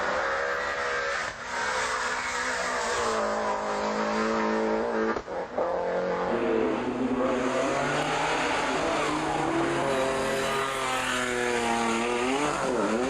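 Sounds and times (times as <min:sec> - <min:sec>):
rally car engine revving: 0:00.0 - 0:13.0.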